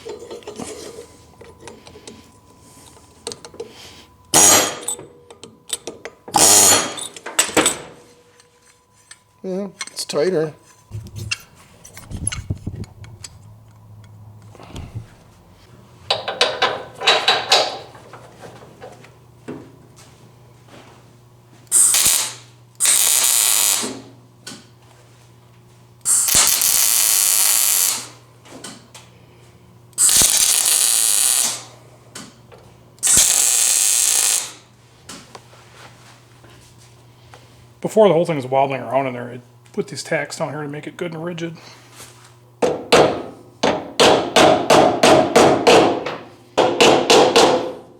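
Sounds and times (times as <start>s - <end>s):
low steady hum: 0.0s - 21.7s
welding crackling bursts: 21.7s - 24.0s, 26.1s - 28.1s, 30.0s - 31.7s, 33.0s - 34.6s.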